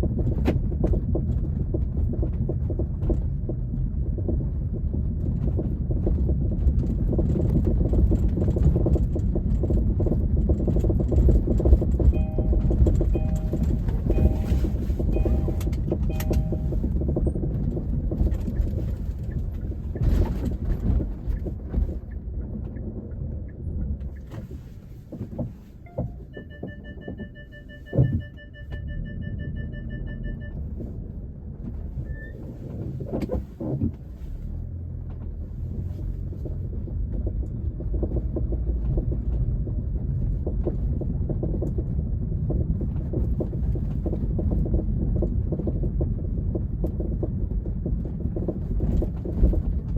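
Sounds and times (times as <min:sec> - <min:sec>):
road rumble: 0:00.0 - 0:49.9
pulsed two-tone beep: 0:12.2 - 0:17.0, 0:25.9 - 0:30.6.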